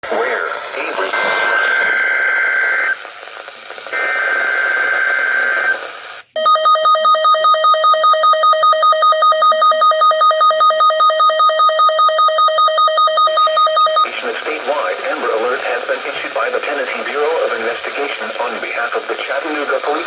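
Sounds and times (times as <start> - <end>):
two-tone digital data bursts: 6.4 - 14.1.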